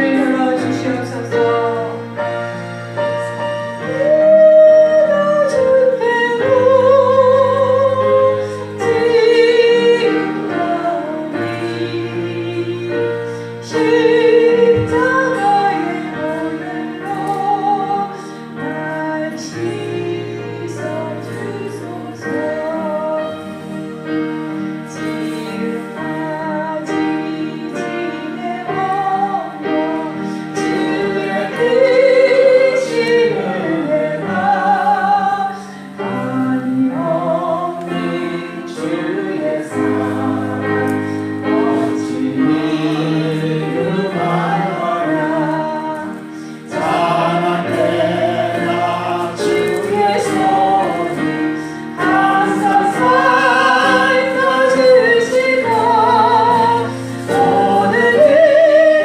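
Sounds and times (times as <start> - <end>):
slow church worship music: 0.0 - 59.0.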